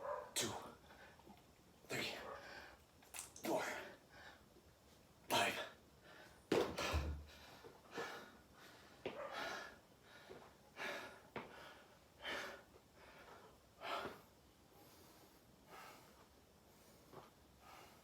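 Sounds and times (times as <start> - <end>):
man breathing hard: 6.0 - 18.0.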